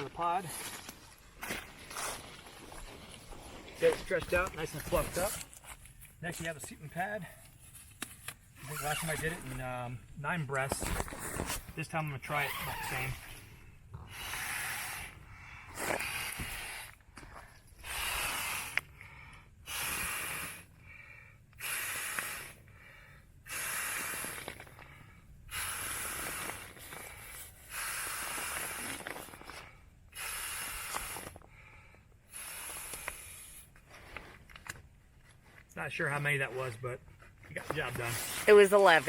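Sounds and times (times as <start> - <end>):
person blowing into inflatable pad: 14.1 - 17.0, 17.8 - 18.8, 19.6 - 20.7, 21.6 - 22.7, 23.4 - 24.8, 25.5 - 31.5, 32.2 - 33.7.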